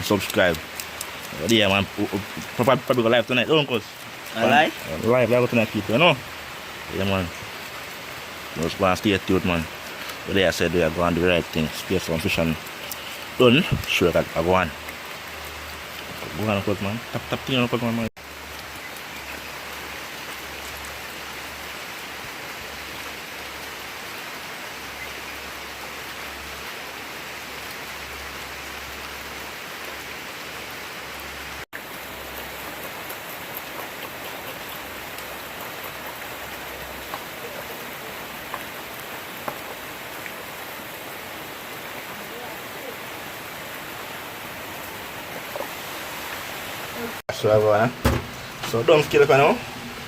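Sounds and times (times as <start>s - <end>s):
faint drips: 0.0s - 21.8s, 31.8s - 47.1s
steady rain hiss: 0.0s - 50.0s.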